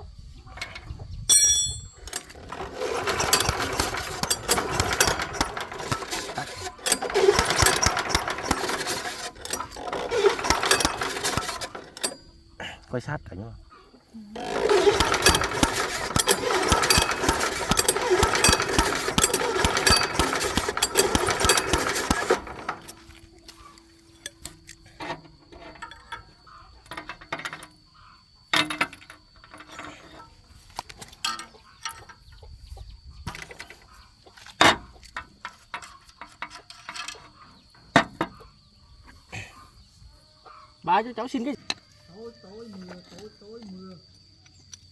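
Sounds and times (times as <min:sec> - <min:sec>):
knocks and clicks: 0:01.4 - 0:12.3, 0:14.4 - 0:23.1
diesel engine running: 0:02.3 - 0:13.1, 0:14.4 - 0:23.3.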